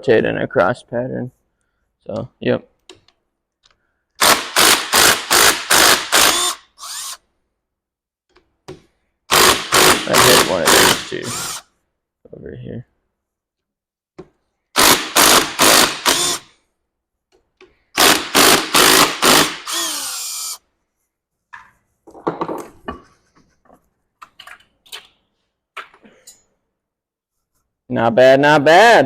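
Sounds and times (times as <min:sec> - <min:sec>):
cordless power tool whining: 0:04.2 - 0:07.2, 0:09.3 - 0:11.6, 0:14.8 - 0:16.5, 0:18.0 - 0:20.6.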